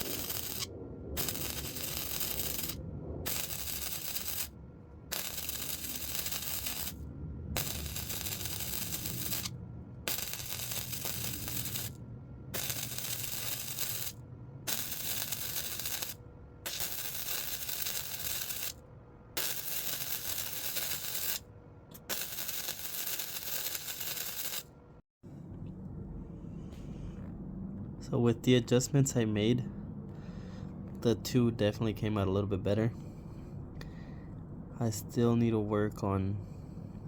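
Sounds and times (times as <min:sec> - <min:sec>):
welder arc crackling: 0:00.0 - 0:07.0, 0:07.6 - 0:24.7.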